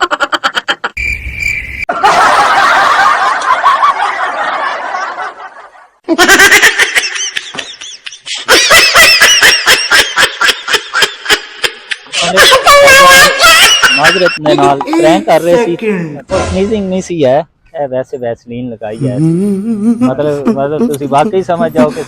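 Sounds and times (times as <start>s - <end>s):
person laughing: 6.1s - 15.2s, 19.0s - 22.0s.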